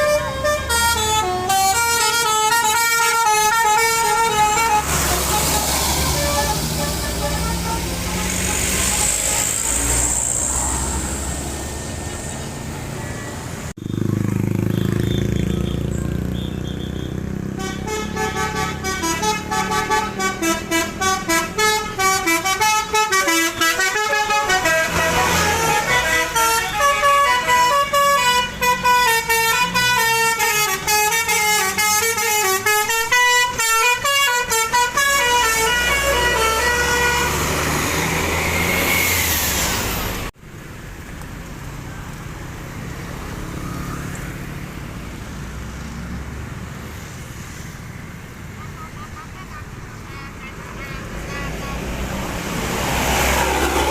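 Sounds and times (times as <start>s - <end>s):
multi-tone bus horn melody: 0.0s - 11.6s, 14.7s - 39.3s
road noise: 0.0s - 53.9s.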